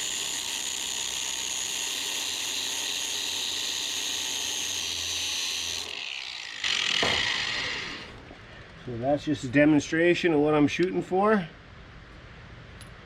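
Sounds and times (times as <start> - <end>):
power drill grinding metal: 0.0 - 8.3.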